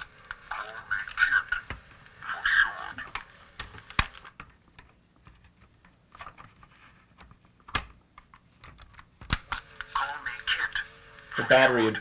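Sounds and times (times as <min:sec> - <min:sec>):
plastic parts clicking and tapping: 0:03.0 - 0:09.9.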